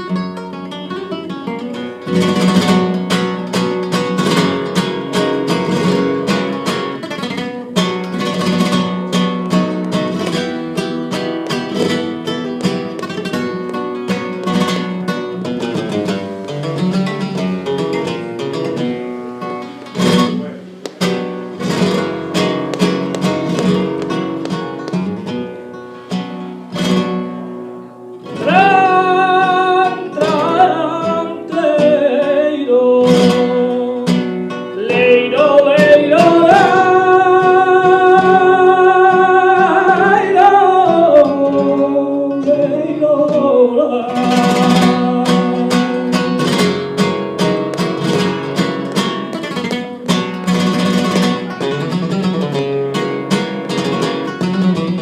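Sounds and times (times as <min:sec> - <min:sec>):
flamenco guitar strumming: 0:00.0 - 0:55.0
person singing long sliding notes: 0:28.2 - 0:47.3.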